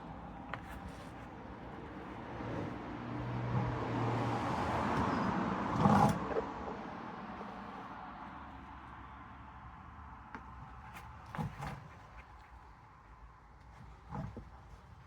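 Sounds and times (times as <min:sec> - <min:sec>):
road vehicle passing by: 0:02.0 - 0:09.2.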